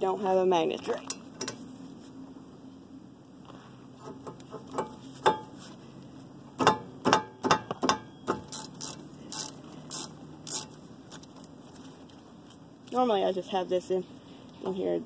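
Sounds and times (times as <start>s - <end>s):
hand ratchet clicking: 8.3s - 11.3s.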